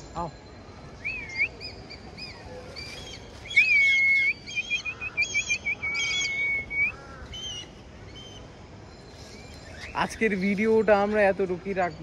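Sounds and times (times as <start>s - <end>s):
kites whistling calls: 1.0s - 8.5s.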